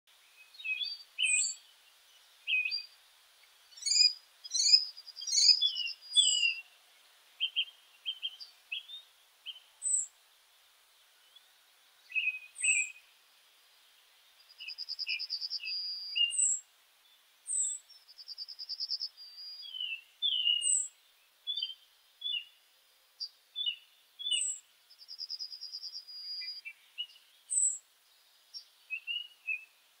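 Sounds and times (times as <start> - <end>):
birds chirping and whistling: 0.5 - 1.6, 3.7 - 6.6, 12.1 - 13.0, 14.6 - 16.6, 17.5 - 17.8, 18.9 - 20.9, 23.6 - 24.6, 25.7 - 27.8, 28.9 - 29.7
bird trills: 3.7 - 6.6, 12.2 - 13.0, 18.4 - 20.9.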